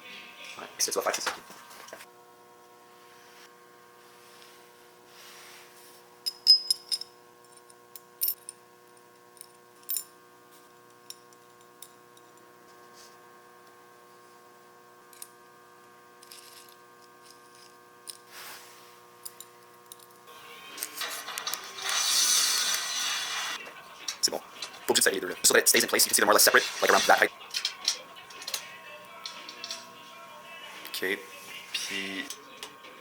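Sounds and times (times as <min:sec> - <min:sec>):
metal fittings clinking: 0:20.8 - 0:30.0.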